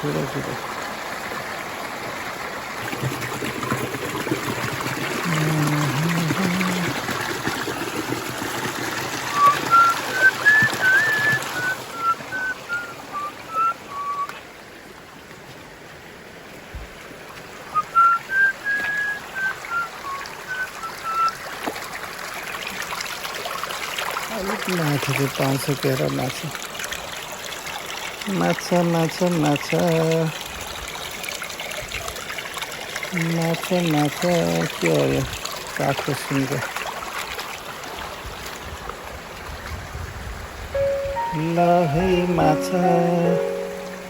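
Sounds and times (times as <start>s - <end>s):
stream trickling over rocks: 0.0s - 44.0s
short whistled notes: 9.3s - 14.4s, 17.8s - 21.4s.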